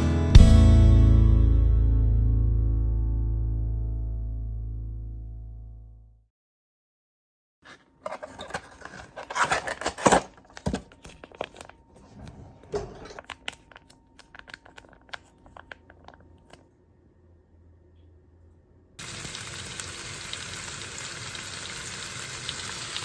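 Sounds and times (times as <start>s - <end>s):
plastic packaging crinkling: 7.7s - 12.0s, 13.0s - 16.7s.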